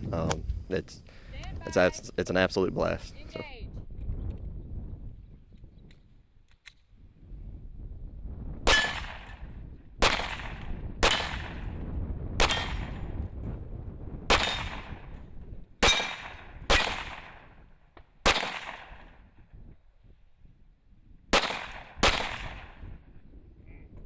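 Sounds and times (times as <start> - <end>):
rifle shots echoing: 8.7 - 11.8, 12.4 - 13.1, 14.3 - 15.2, 15.8 - 19.3, 21.3 - 22.8.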